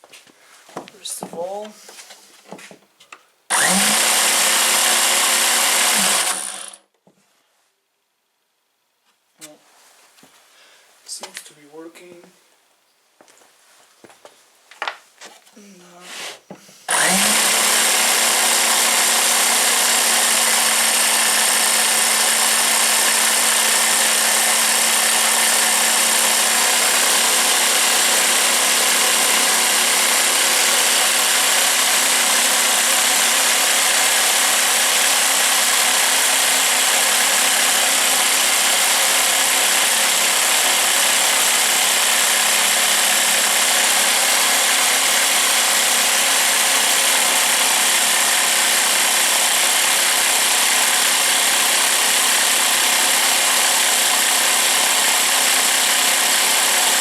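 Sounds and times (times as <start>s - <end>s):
jigsaw motor hum and hiss: 3.5s - 6.8s, 16.2s - 57.0s.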